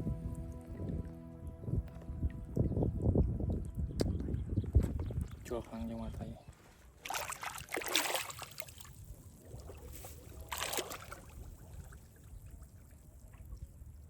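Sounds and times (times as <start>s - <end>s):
low steady rumble: 0.0s - 4.6s
water splashing and sloshing: 0.0s - 14.0s.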